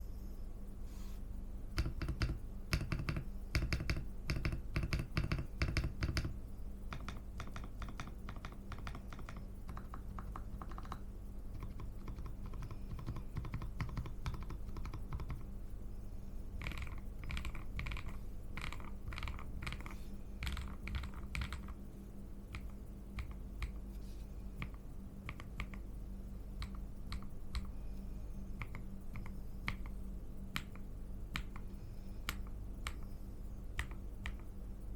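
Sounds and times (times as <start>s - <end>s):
mechanical keyboard typing: 1.8s - 15.5s, 16.6s - 21.8s, 22.5s - 23.8s, 24.6s - 25.8s, 26.6s - 27.7s, 28.6s - 33.0s.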